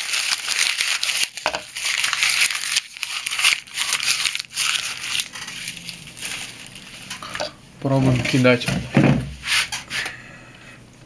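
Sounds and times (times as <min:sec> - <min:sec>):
knife tearing through material: 0:00.0 - 0:06.4.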